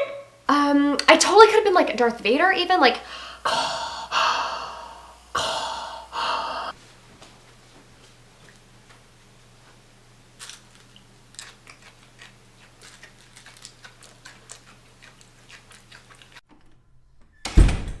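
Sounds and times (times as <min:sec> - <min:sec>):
faint steady hum: 0:00.0 - 0:17.6
crisp crunching clicks: 0:10.4 - 0:16.4.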